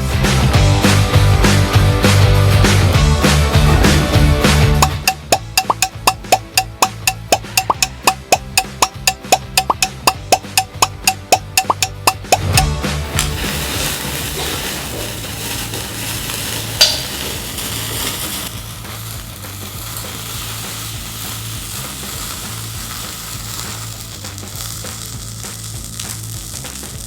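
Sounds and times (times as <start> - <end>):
firework fizzing: 12.6 - 27.0
sharp firework crack: 13.0 - 27.0.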